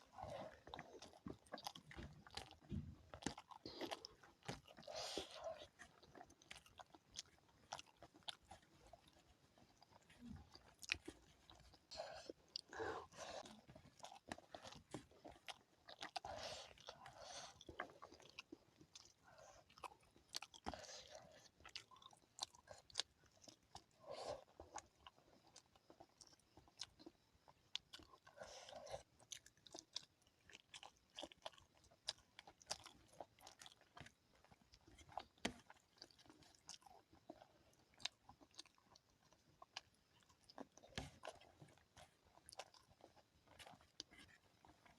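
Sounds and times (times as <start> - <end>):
chewing clicks and crunches: 0.0 - 44.9
person chewing food: 0.0 - 44.9.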